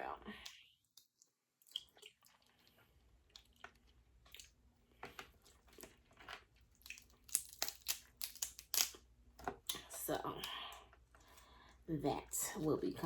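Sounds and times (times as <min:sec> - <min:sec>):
shellfish shells cracking by hand: 0:05.7 - 0:09.8.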